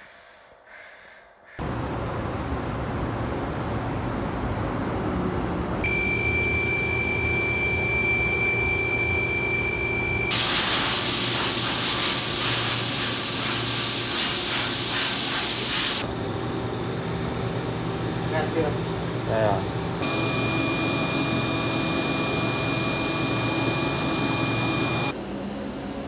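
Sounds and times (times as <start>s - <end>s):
machinery low rumble: 1.6s - 11.0s, 16.0s - 25.1s
high-pitched whine with hum: 5.8s - 26.0s
loud spraying hiss: 10.3s - 16.1s.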